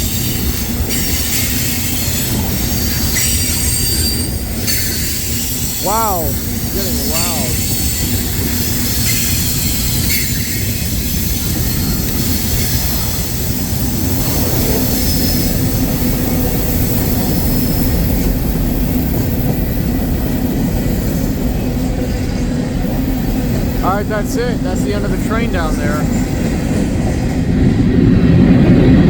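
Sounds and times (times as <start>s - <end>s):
freight train wheels rumbling on rail: 0.0s - 29.0s.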